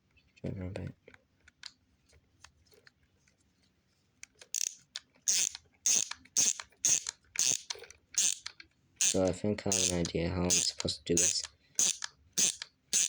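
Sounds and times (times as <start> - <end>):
screwdriver clicking: 4.6 - 13.0.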